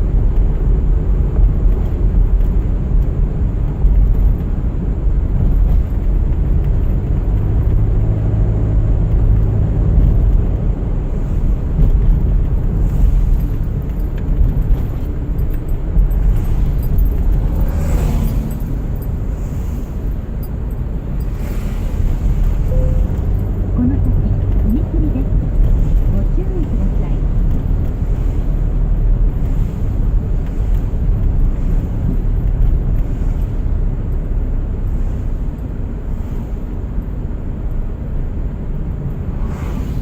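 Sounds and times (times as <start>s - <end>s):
car road and engine rumble: 0.0s - 40.0s
rushing whoosh: 10.9s - 23.8s, 38.8s - 40.0s.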